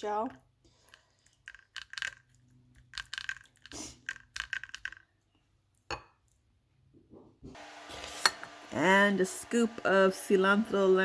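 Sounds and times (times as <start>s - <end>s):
spoon clinking and scraping: 0.7s - 5.1s.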